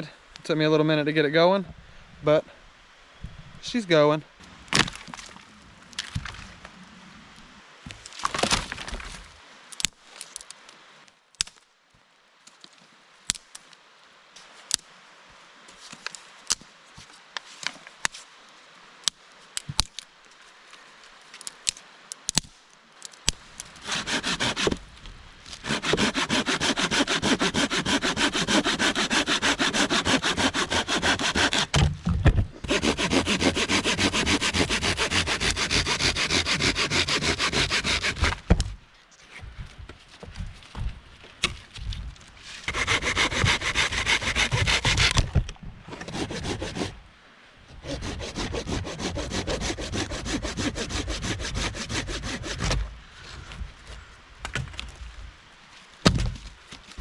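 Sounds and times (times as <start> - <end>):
hand saw cutting firewood: 23.8 - 24.8, 25.5 - 31.9, 32.6 - 38.5, 42.6 - 45.3, 45.9 - 47.0, 47.7 - 52.8.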